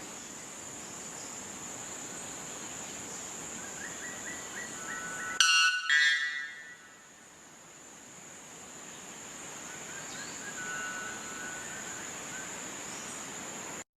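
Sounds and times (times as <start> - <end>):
high-pitched insect drone: 0.0 - 7.8, 9.6 - 13.2
faint bird chirps: 2.2 - 7.2, 9.7 - 13.3.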